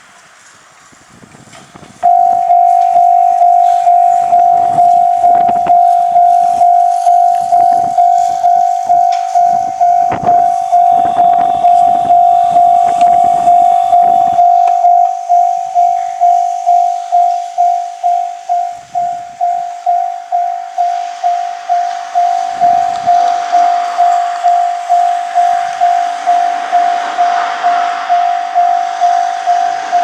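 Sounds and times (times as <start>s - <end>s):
level crossing alarm dinging: 2.0s - 30.0s.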